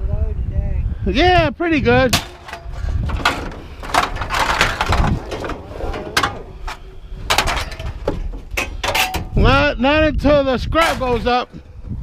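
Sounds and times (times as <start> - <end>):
crashing clatter: 2.1 - 9.5
scrap metal banging: 2.1 - 9.6, 10.8 - 11.4.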